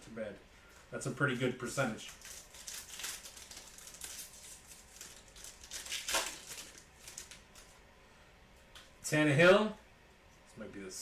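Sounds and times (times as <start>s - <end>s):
foil wrappers rustling: 1.2s - 7.8s.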